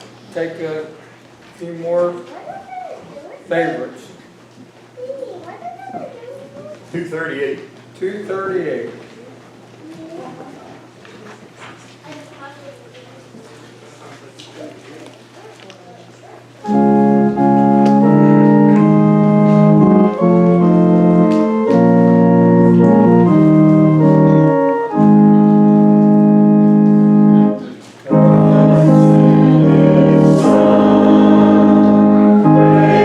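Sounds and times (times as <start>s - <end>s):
organ playing hymn chords: 16.6s - 33.0s.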